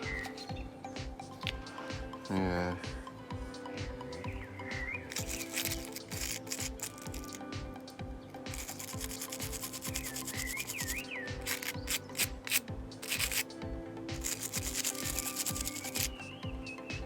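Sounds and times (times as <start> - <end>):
scrubbing metal contacts: 5.0 - 13.5, 14.1 - 16.3.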